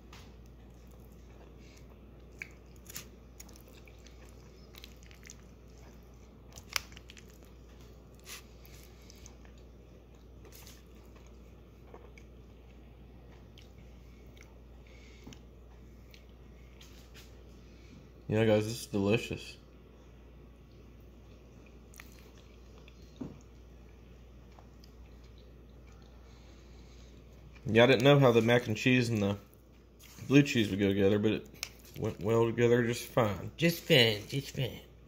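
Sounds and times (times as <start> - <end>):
faint chewing: 0.0 - 17.4, 20.6 - 30.3, 31.4 - 32.4.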